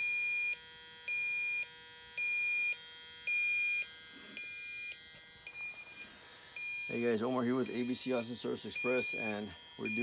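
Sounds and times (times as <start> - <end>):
high-pitched electronic beeps: 5.5 - 10.0.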